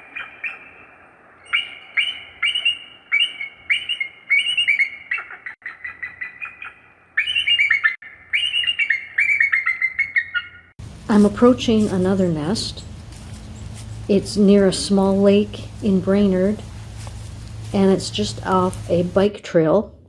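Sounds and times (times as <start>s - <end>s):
bird chittering: 0.0s - 10.7s, 12.4s - 14.9s
bird whistled chirps: 0.0s - 10.7s.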